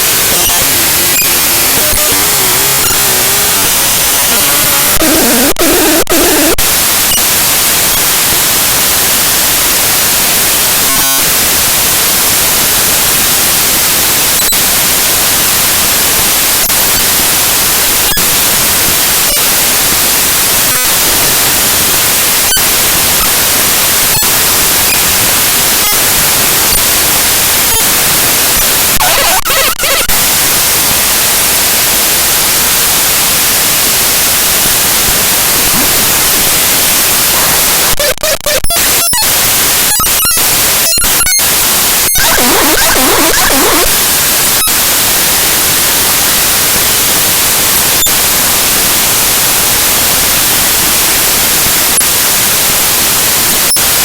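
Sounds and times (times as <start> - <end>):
buzzy tones: 0.0 - 8.4, 10.8 - 11.4, 14.0 - 31.1, 34.7 - 45.1
loud static-like hiss: 0.0 - 54.0.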